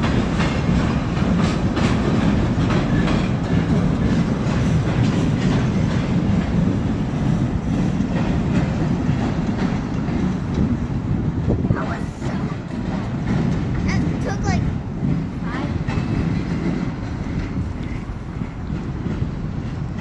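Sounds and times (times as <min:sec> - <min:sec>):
train rumble: 0:00.0 - 0:20.0
train wheels clacking on rail joints: 0:00.0 - 0:20.0.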